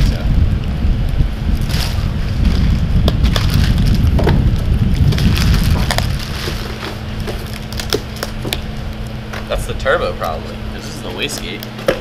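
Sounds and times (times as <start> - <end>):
low rumble: 0.0 - 11.1
steady low hum: 0.0 - 12.0
cardboard being handled: 1.7 - 8.6.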